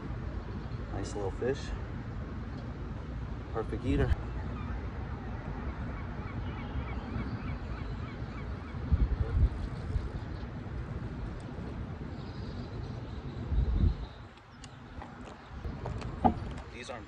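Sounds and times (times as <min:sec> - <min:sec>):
wind rumble on microphone: 0:00.0 - 0:17.0
birds calling: 0:00.3 - 0:17.0
low thumps: 0:15.6 - 0:16.7.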